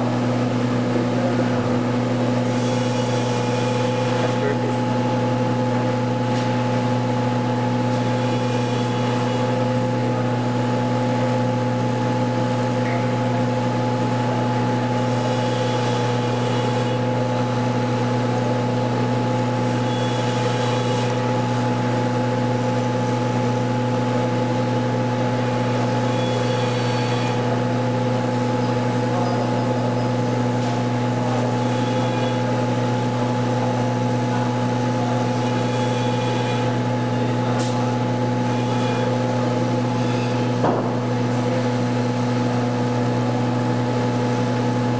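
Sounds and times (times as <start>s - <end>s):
small motor running: 2.4s - 4.9s, 7.9s - 9.6s, 14.9s - 17.2s, 19.6s - 21.6s, 25.4s - 27.7s, 31.3s - 33.2s, 35.2s - 37.3s, 38.4s - 40.6s.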